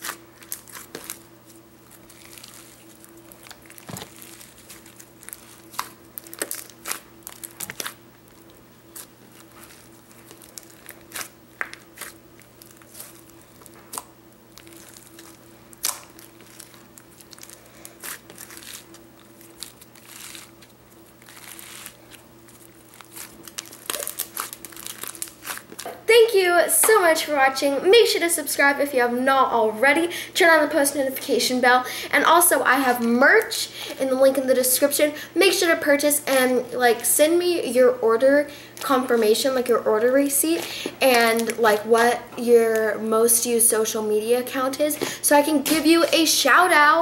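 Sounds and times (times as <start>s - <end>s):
slime crackling and popping: 0.0s - 26.0s
faint steady hum: 0.0s - 47.0s.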